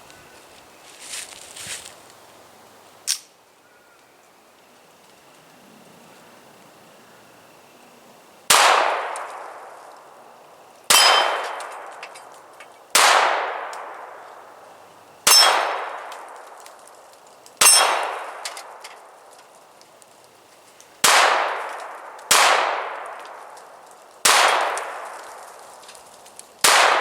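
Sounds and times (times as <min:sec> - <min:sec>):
pistol shots with ringing decay: 0:08.5 - 0:09.7, 0:10.9 - 0:12.0, 0:13.0 - 0:14.3, 0:15.2 - 0:16.3, 0:17.6 - 0:18.8, 0:21.0 - 0:23.3, 0:24.2 - 0:25.2, 0:26.6 - 0:27.0.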